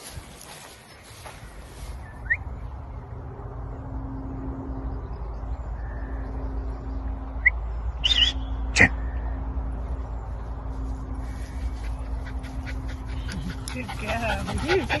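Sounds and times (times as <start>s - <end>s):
rising bird chirps: 4.9s - 9.5s
bright bird call: 8.0s - 9.1s.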